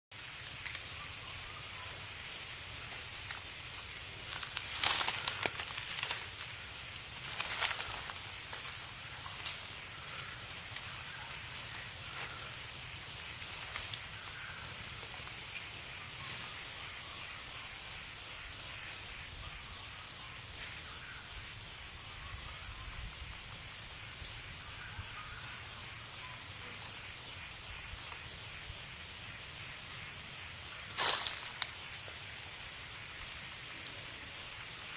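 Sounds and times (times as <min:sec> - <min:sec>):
cicadas buzzing: 0:00.1 - 0:34.9.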